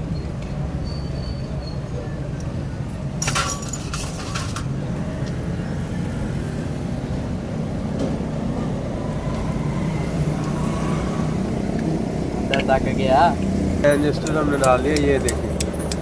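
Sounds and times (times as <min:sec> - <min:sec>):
road traffic rumble: 0:00.0 - 0:16.0
metal tools clinking: 0:03.2 - 0:04.7.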